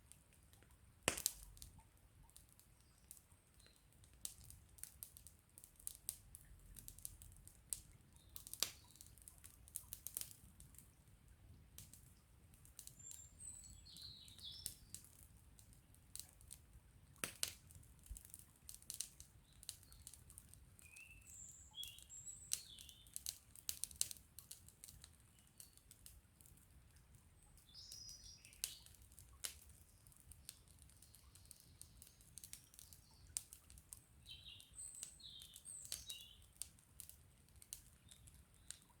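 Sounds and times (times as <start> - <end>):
campfire crackling and popping: 0.0 - 39.0
songbirds chirping: 7.9 - 9.4, 10.8 - 15.2, 19.2 - 23.4, 25.0 - 39.0.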